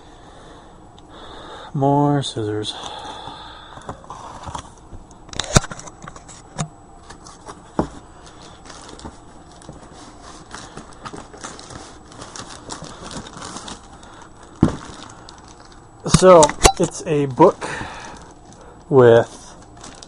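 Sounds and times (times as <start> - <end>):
packaging crinkling and rustling: 7.1 - 16.6, 17.3 - 20.0.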